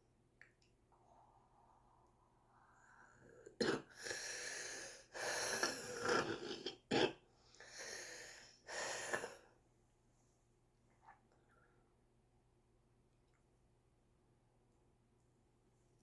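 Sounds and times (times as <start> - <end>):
wheezy congested breathing: 2.5 - 6.4, 7.5 - 9.5.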